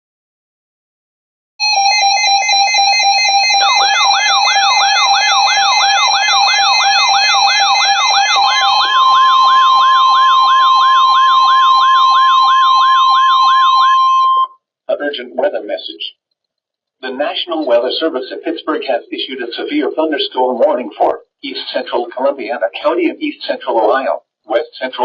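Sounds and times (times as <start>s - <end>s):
falling siren-like sweep: 3.6s - 14.5s
steady higher tone: 7.6s - 14.5s.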